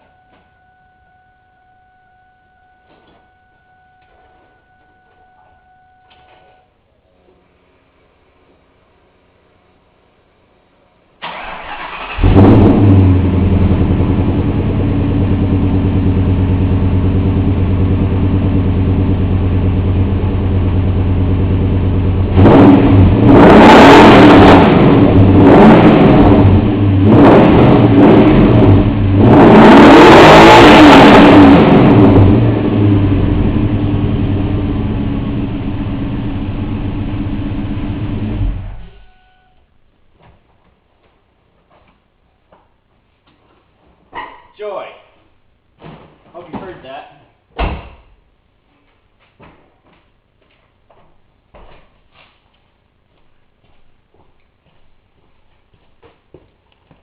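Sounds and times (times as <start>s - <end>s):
car engine cranking: 11.2s - 14.7s
car engine idling and revving: 11.3s - 39.2s.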